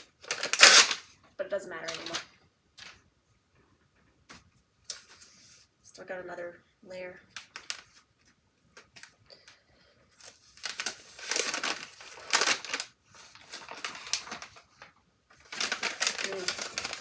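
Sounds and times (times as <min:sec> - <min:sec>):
wrapping crinkling and rustling: 0:00.0 - 0:03.0, 0:04.3 - 0:05.7, 0:07.3 - 0:17.0.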